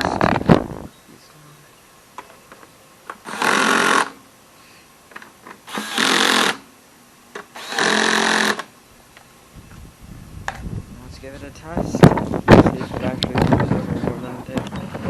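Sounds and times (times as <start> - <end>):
cordless power driver bursts: 3.1 - 4.2, 5.5 - 6.7, 7.3 - 8.8.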